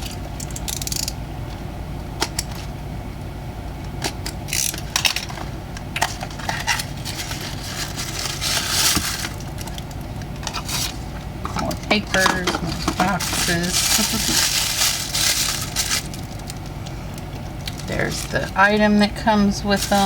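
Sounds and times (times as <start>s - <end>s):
low hum: 0.0s - 20.0s
paper crinkling: 4.7s - 20.0s.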